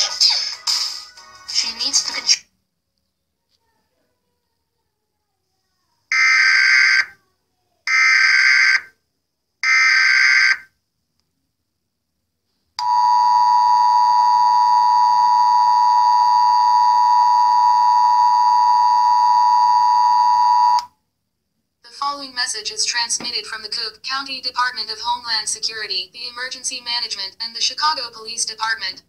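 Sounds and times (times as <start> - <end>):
loud two-tone attention signal: 12.8 - 20.8.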